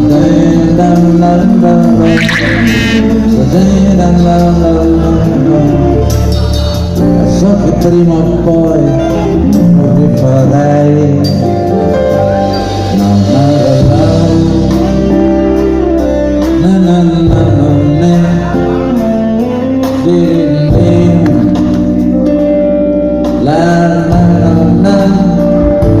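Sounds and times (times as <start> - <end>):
man singing: 0.0 - 6.2, 7.2 - 11.5, 12.9 - 15.4, 16.4 - 21.9, 23.3 - 26.0
live band music: 2.0 - 3.4.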